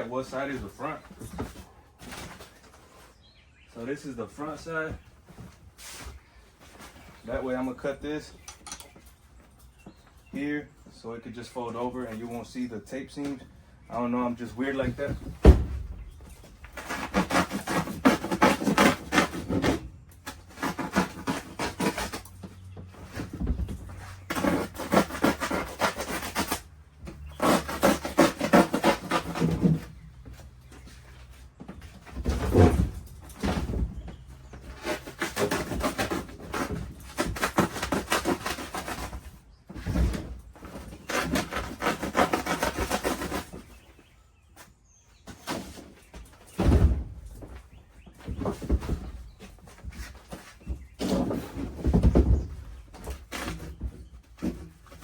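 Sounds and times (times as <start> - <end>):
knife sawing through insulation: 16.6 - 22.3, 23.0 - 30.0, 32.2 - 43.9, 48.4 - 55.0.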